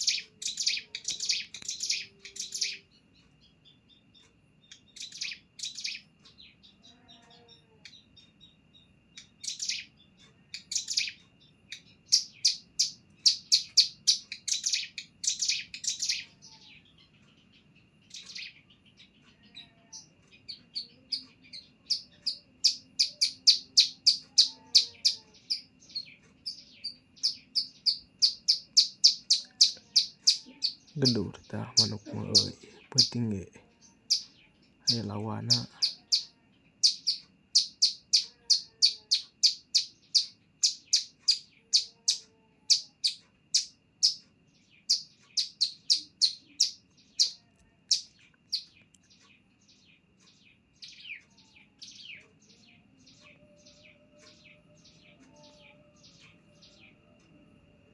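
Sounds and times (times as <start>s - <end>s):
bird singing rapid high notes: 20.5s - 33.5s, 34.1s - 42.0s.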